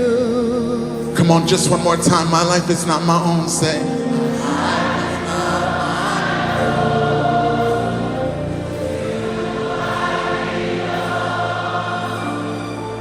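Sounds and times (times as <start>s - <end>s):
congregation singing: 0.0s - 13.0s
instrumental backing: 0.0s - 13.0s.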